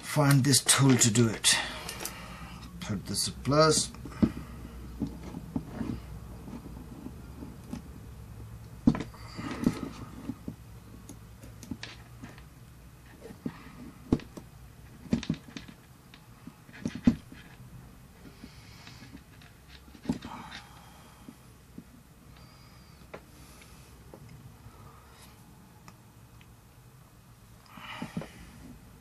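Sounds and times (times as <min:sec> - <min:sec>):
clicks of handling wires and tools: 0:00.0 - 0:05.9
low steady hum: 0:00.0 - 0:29.0.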